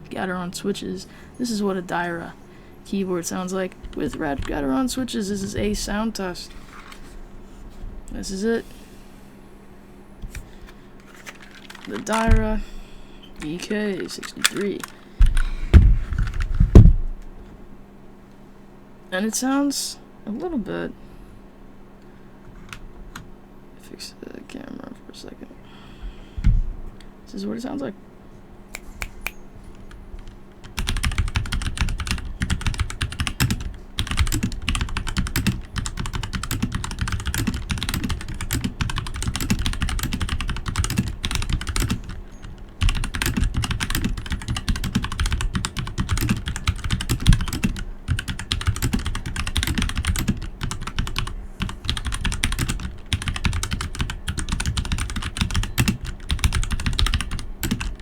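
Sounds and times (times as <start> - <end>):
mechanical keyboard typing: 3.7 - 4.6, 11.2 - 12.5, 13.4 - 15.1, 29.7 - 58.0.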